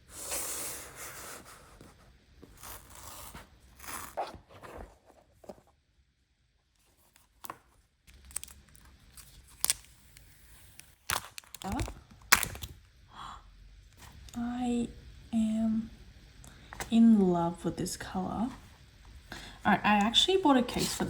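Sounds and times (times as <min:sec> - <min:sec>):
packaging scraping and tearing: 0:02.5 - 0:05.6, 0:08.1 - 0:12.7.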